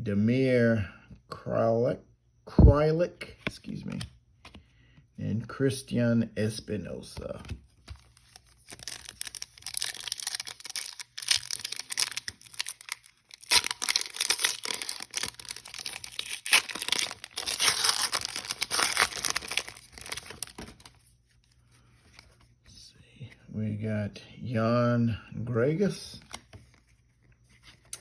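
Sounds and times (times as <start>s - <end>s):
wrapper tearing and crinkling: 8.1s - 21.0s.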